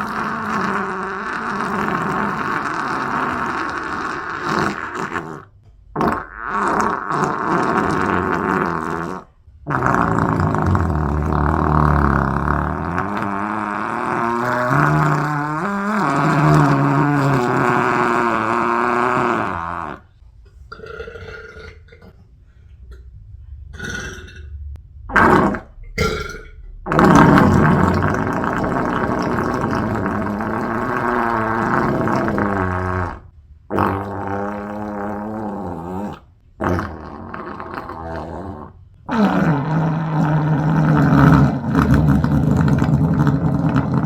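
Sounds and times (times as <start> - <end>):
person belching loudly: 6.0 - 20.0, 23.8 - 24.4, 25.1 - 44.0.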